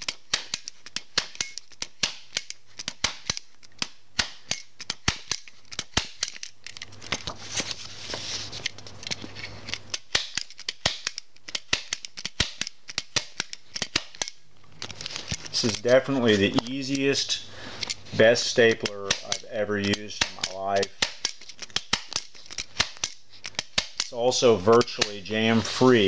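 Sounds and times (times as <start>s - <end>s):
stapler clicking: 0.0s - 7.2s, 9.1s - 15.8s, 18.7s - 24.1s
paper rustling: 5.2s - 12.6s, 13.2s - 26.0s.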